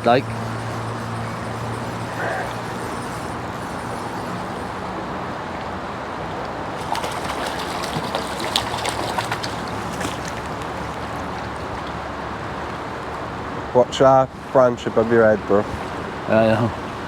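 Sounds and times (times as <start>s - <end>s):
sharp clicks and splashes: 6.4s - 13.3s.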